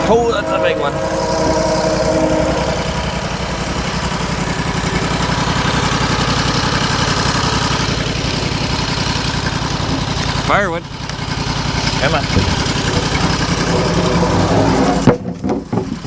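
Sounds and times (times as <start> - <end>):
sawmill engine running: 0.0 - 16.0.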